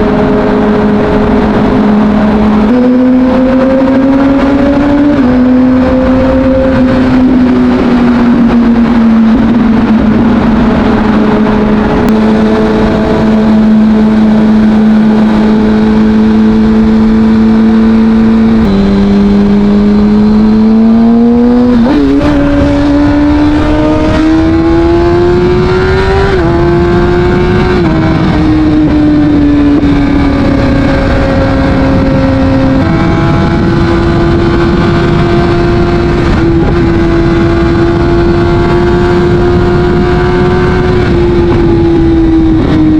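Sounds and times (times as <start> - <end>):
motorcycle engine running: 0.0 - 42.9
wind and road noise: 0.0 - 42.9.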